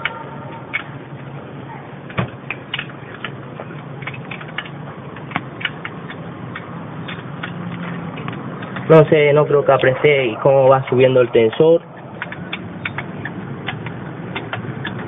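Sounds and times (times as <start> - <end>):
socket wrench clicks and knocks: 4.0 - 8.9, 12.0 - 15.0.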